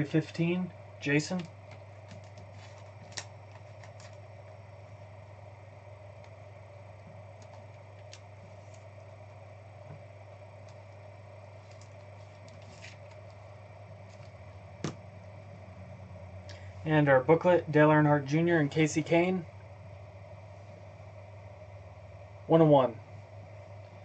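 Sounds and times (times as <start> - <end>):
low room hum: 0.0 - 24.0
cards and packaging ticking: 1.3 - 4.6, 7.3 - 9.1, 11.6 - 13.4.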